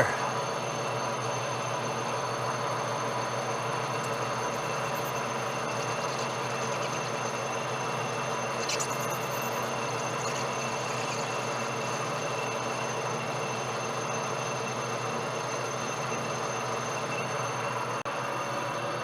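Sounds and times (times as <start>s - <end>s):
metal lathe motor hum: 0.0s - 19.0s.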